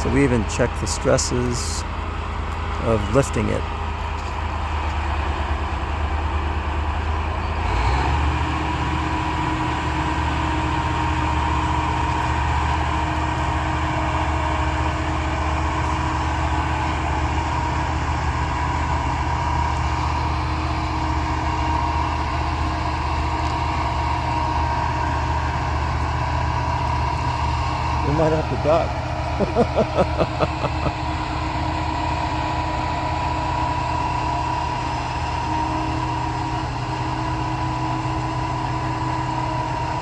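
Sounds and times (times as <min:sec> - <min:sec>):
heavy engine running: 0:00.0 - 0:40.0.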